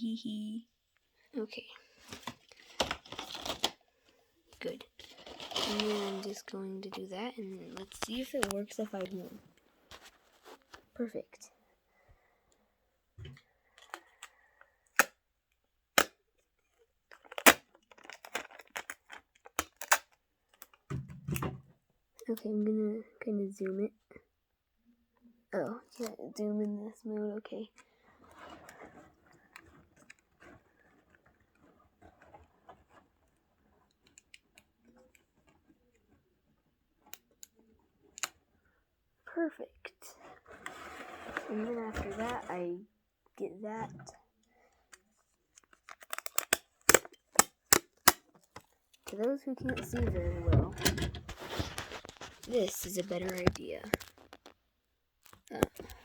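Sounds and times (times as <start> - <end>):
plastic toy pieces clicking: 45.6 - 48.2.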